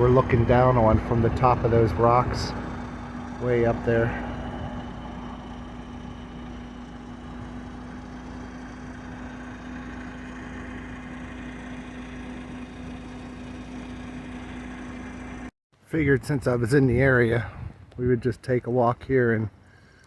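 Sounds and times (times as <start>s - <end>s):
engine idling: 0.0s - 15.5s.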